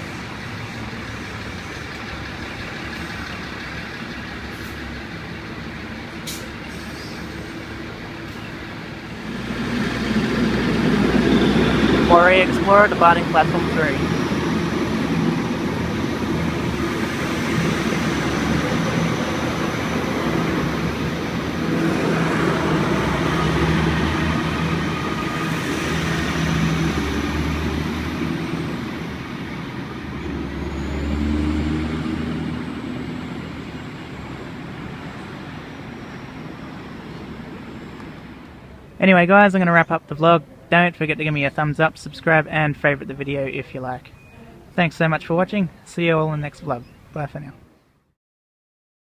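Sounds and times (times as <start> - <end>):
diesel engine: 0.0 - 47.8
wheel and rail rumble: 0.0 - 47.8.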